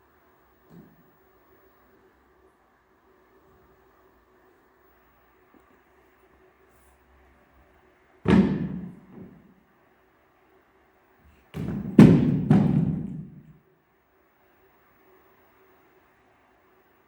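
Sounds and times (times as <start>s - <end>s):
heavy thuds: 8.3s - 9.6s, 11.6s - 13.6s.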